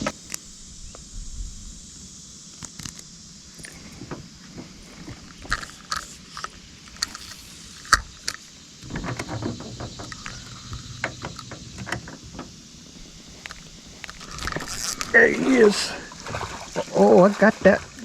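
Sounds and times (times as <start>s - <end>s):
tackle clicks: 5.4s - 15.7s
fishing reel ratcheting: 5.5s - 12.1s, 12.9s - 15.7s.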